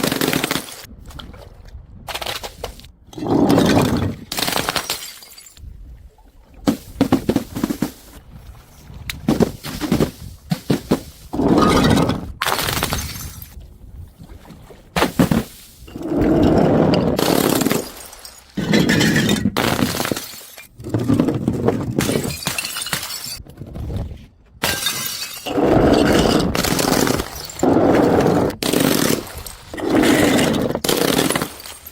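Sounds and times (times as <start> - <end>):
glass bottles smashing: 3.6 - 5.6, 16.0 - 20.8, 22.0 - 23.4, 24.6 - 27.7, 28.7 - 31.9.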